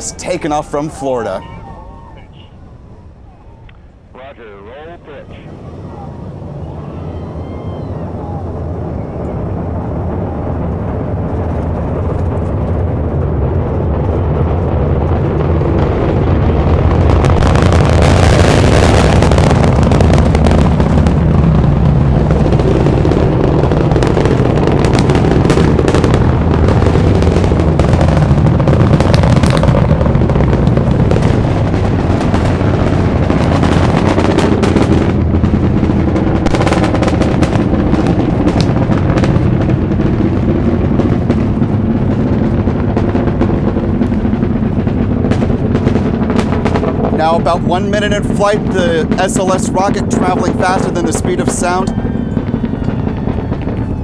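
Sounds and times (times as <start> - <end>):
rocket engines roaring: 0.0 - 54.0
rapid sharp crackle: 9.2 - 54.0.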